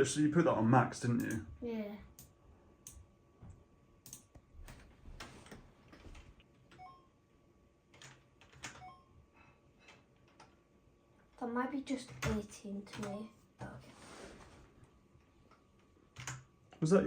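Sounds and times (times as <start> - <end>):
keyboard typing: 1.2 - 1.4, 4.0 - 7.0, 7.9 - 9.1, 11.9 - 13.3, 16.1 - 16.9.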